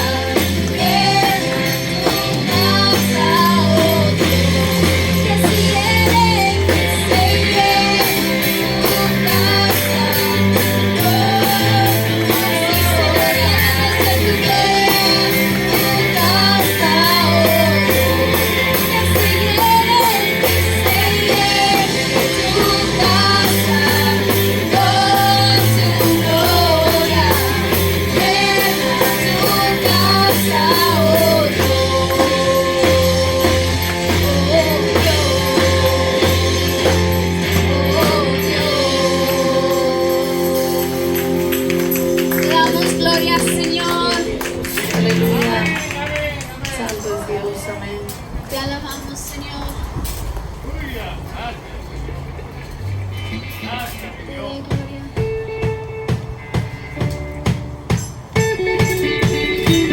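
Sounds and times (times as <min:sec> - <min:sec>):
drums with cymbal beat: 0:00.0 - 0:45.8, 0:54.7 - 0:59.9
bass notes: 0:00.0 - 0:46.1
guitar: 0:00.0 - 0:50.5, 0:52.0 - 0:59.9.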